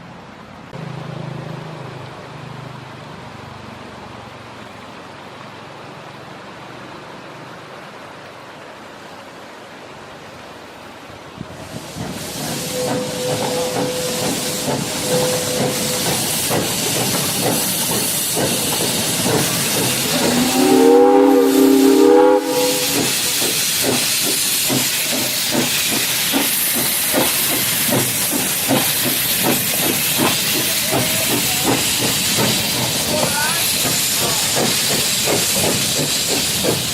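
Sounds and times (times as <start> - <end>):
steam locomotive hissing: 11.4 - 36.9
locomotive exhaust beating: 11.7 - 36.9
multi-tone steam whistle: 12.5 - 16.4, 20.1 - 23.5.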